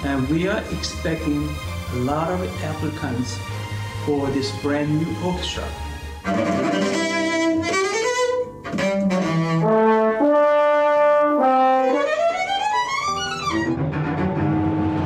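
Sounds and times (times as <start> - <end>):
bowed strings: 0.0 - 10.2, 11.7 - 15.0
brass holding notes: 6.2 - 13.6.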